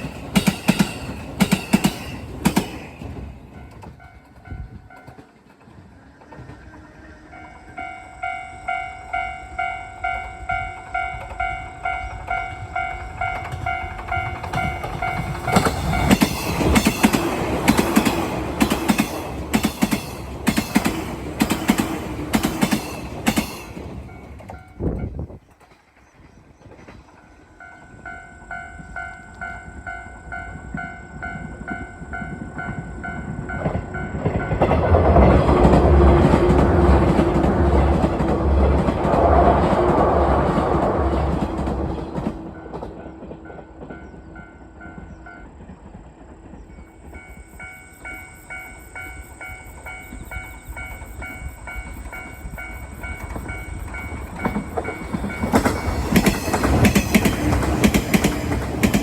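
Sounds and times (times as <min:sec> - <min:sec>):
train wheels clacking over rail joints: 0:00.0 - 0:06.8, 0:10.6 - 0:27.5, 0:52.2 - 0:59.0
train approaching: 0:00.0 - 0:59.0
level-crossing warning bell: 0:07.2 - 0:25.2, 0:27.5 - 0:37.5, 0:46.7 - 0:59.0.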